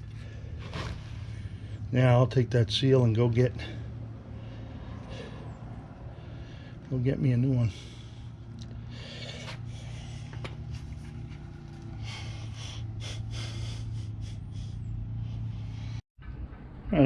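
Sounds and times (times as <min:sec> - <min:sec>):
rustles: 0:00.0 - 0:01.8, 0:07.8 - 0:12.6
vehicle engine humming: 0:00.0 - 0:16.9.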